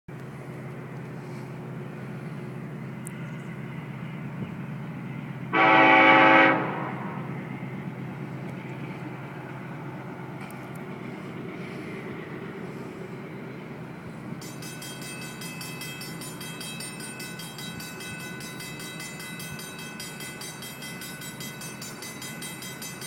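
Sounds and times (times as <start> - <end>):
low train rumble: 0.1 - 23.0
locomotive horn blast: 5.5 - 7.3.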